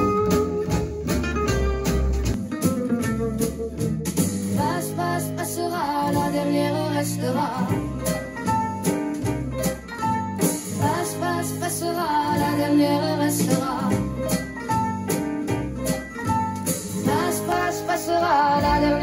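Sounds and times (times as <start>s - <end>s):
guitar music: 0.0s - 19.0s
person singing wordlessly: 4.6s - 8.1s, 10.8s - 14.0s, 17.0s - 19.0s.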